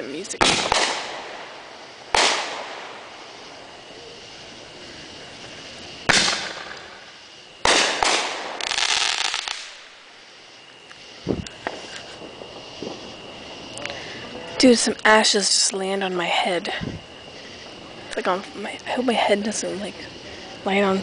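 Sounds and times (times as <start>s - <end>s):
fireworks bangs: 0.0s - 15.3s
fireworks crackling: 0.0s - 21.0s
small fireworks pops: 0.2s - 10.0s, 10.6s - 15.2s.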